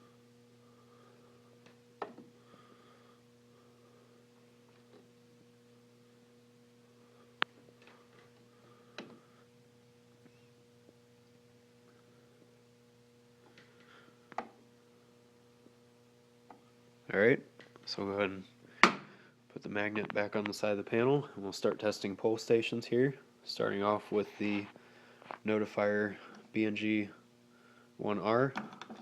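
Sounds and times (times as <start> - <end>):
electrical mains hum: 0.0 - 29.0.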